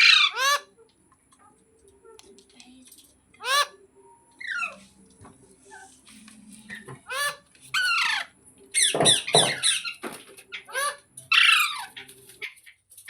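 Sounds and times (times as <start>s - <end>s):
parrot squawking: 0.0s - 0.7s, 3.4s - 3.8s, 4.4s - 4.8s, 7.0s - 12.6s.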